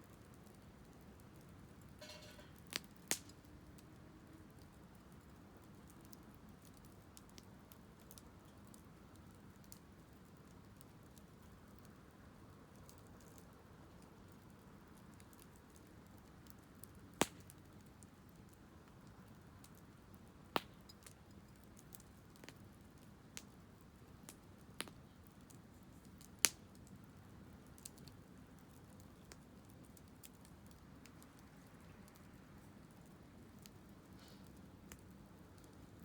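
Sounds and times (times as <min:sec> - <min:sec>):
wood fire crackling: 0:00.1 - 0:36.0
faint low hiss: 0:17.6 - 0:36.0.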